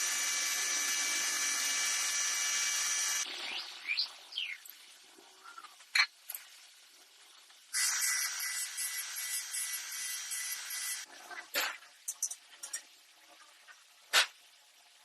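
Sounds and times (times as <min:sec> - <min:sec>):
power drill whining: 0:00.0 - 0:03.2, 0:07.8 - 0:11.1.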